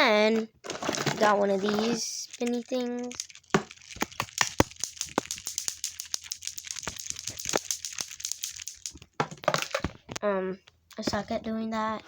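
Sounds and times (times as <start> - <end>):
plastic fidget toy clicking: 1.6 - 9.8.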